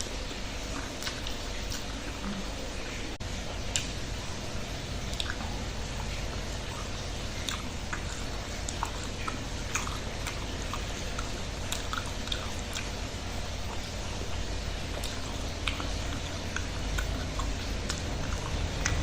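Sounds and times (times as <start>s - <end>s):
person chewing food: 0.0s - 2.8s, 3.6s - 19.0s
wet mouth clicks and smacks: 5.1s - 13.0s, 15.0s - 19.0s.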